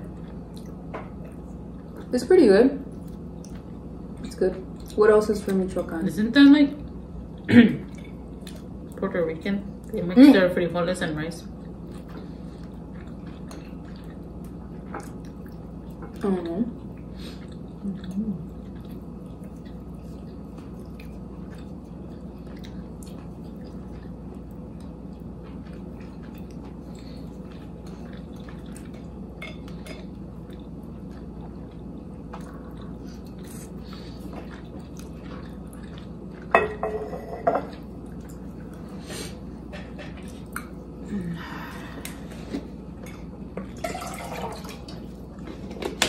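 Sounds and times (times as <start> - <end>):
person chewing: 0.0 - 2.1, 11.6 - 36.7
low room hum: 0.0 - 46.0.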